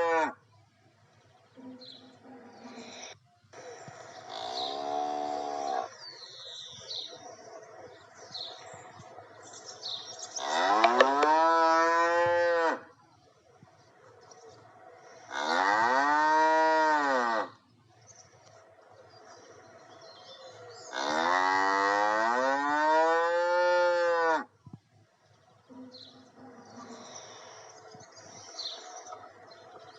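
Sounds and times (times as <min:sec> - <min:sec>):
cow mooing: 0:00.0 - 0:00.4, 0:04.3 - 0:06.0, 0:10.4 - 0:12.9, 0:15.3 - 0:17.6, 0:20.9 - 0:24.5
birds chirping faintly: 0:00.4 - 0:11.4, 0:17.6 - 0:21.4, 0:24.6 - 0:29.9.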